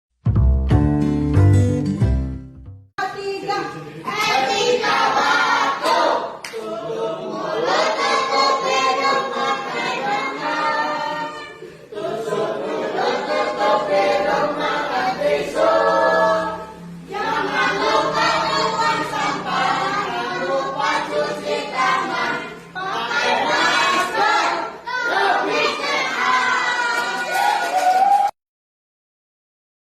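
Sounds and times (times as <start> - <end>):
group of voices singing: 3.4 - 27.4.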